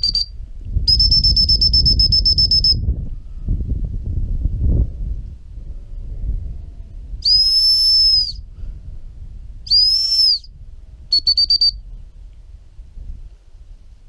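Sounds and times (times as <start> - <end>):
whistle short pips: 0.0 - 2.8, 7.2 - 8.4, 9.7 - 10.5, 11.1 - 11.8
whistle long blasts: 0.0 - 2.9, 7.2 - 8.5, 9.6 - 11.9.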